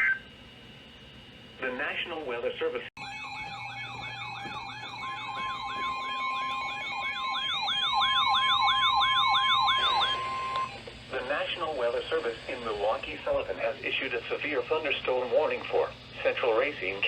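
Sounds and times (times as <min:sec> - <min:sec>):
rapid downward sweeping siren tone: 0:03.0 - 0:10.7.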